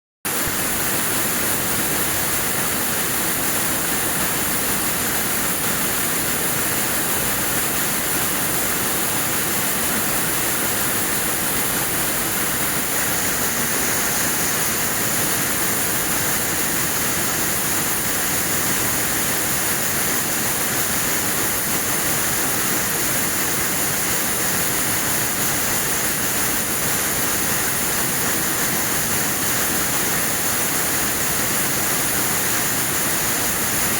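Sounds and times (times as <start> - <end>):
weaving looms hissing: 9.7 - 22.8.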